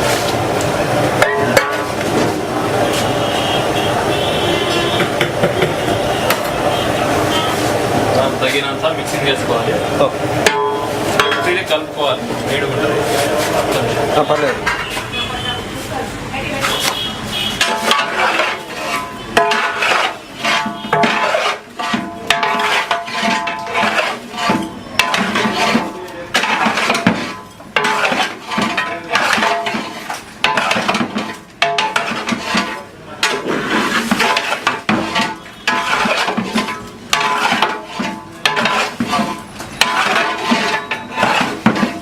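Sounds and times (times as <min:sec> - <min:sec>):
metal spatula clanking on griddle: 0:01.2 - 0:02.1, 0:10.4 - 0:11.8, 0:17.5 - 0:42.0.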